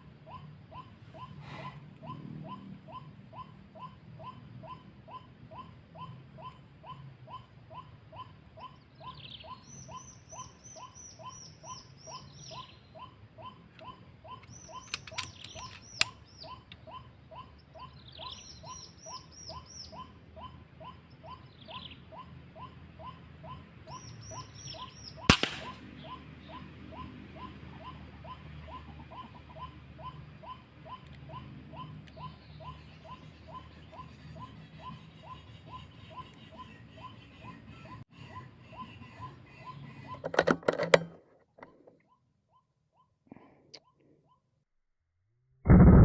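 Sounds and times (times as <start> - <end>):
low animal call: 0.0 - 24.9
high chirping trills: 0.0 - 40.2
sharp clicks: 13.7 - 16.8, 25.3 - 25.8
loud sharp crack: 25.3 - 25.8.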